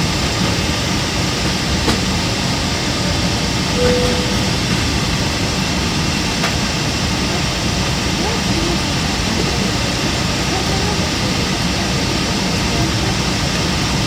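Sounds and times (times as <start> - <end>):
airliner cabin rumble and hiss: 0.0 - 14.0
soft beep: 3.8 - 5.1.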